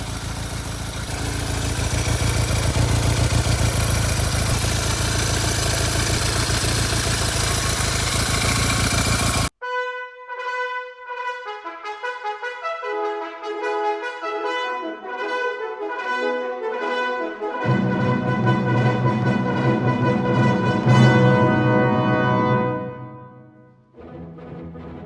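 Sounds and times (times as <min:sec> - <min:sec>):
motorcycle engine running: 0:00.0 - 0:09.5
brass music with held notes: 0:09.6 - 0:25.0.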